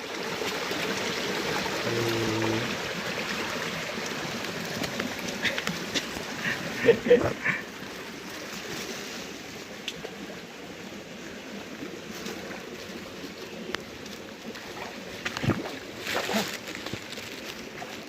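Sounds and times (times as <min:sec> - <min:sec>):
rustle: 0:00.0 - 0:18.0
stream running: 0:00.0 - 0:18.0.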